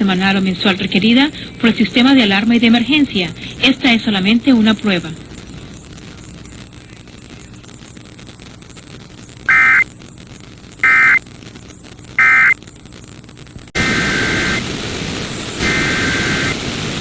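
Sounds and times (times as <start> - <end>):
faint radio hiss: 0.0 - 17.0
loud static: 0.0 - 17.0
warbling digital data tones: 5.2 - 11.2, 12.2 - 12.6.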